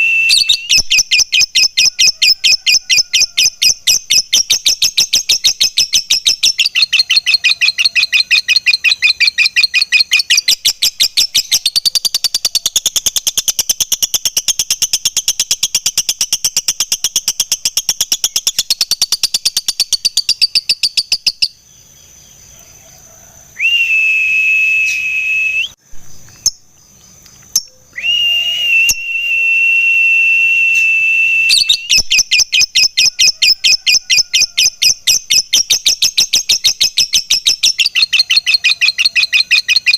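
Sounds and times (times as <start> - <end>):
high whistles: 0.0 - 1.2, 23.6 - 25.8, 27.9 - 32.6
lovebird chattering: 0.4 - 21.6, 31.6 - 39.9.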